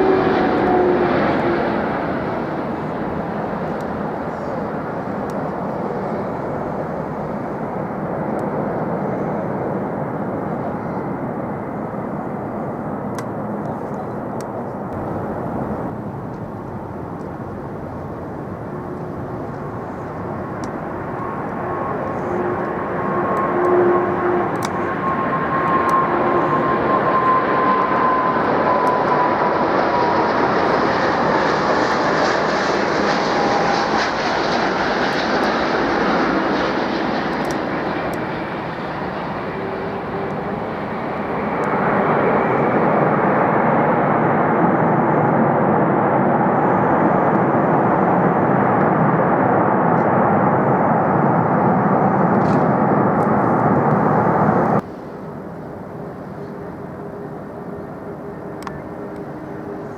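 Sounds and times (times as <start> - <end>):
jet engines roaring: 0.0 - 59.9
background rumble: 15.0 - 18.2.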